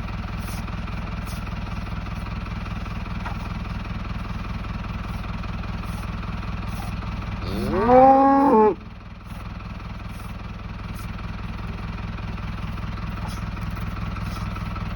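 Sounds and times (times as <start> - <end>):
low engine hum: 0.0 - 14.9
cow mooing: 7.4 - 8.9.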